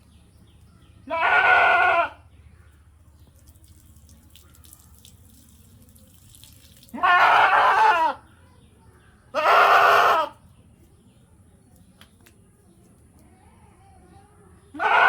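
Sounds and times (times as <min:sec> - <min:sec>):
goat bleating: 0:01.0 - 0:02.2, 0:06.9 - 0:08.2, 0:09.3 - 0:10.4, 0:14.7 - 0:15.0.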